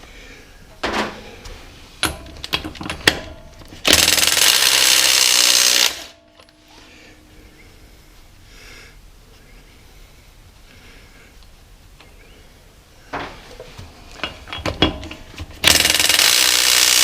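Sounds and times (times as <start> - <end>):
impact wrench hammering: 2.0 - 6.5, 14.4 - 17.0.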